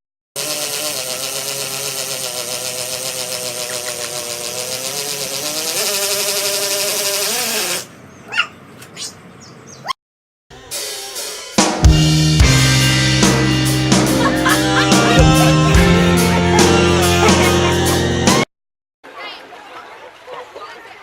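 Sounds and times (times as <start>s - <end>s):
music with drums and cymbals: 10.6s - 18.4s
rock music with heavy bass: 10.7s - 18.4s.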